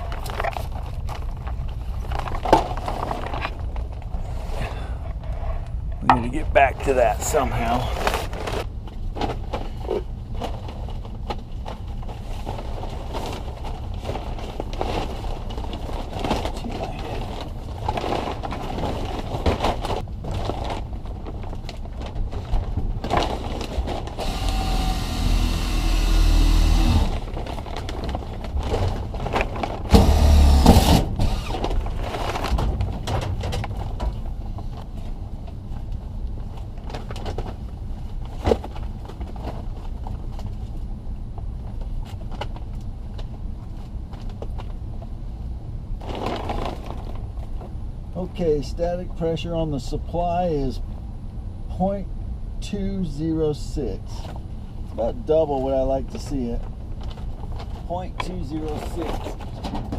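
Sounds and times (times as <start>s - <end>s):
steady low hum: 0.0s - 59.9s
cordless drill drilling sheet metal: 24.2s - 27.2s, 29.9s - 31.6s.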